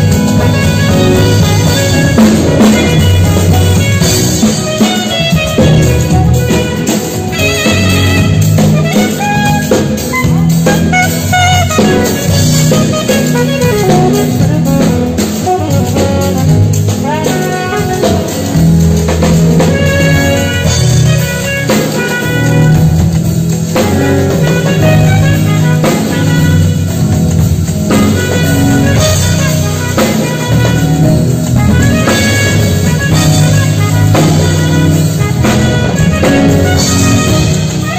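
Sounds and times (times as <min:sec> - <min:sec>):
bass line: 0:00.0 - 0:37.9
drums: 0:00.0 - 0:37.9
saxophone melody: 0:00.0 - 0:37.9.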